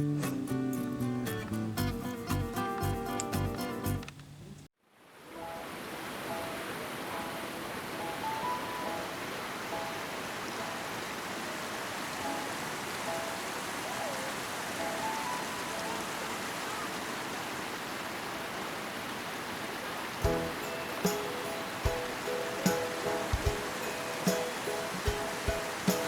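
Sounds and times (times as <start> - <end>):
steady rushing hiss: 5.0 - 18.5, 20.1 - 26.0
faint high notes: 20.2 - 26.0.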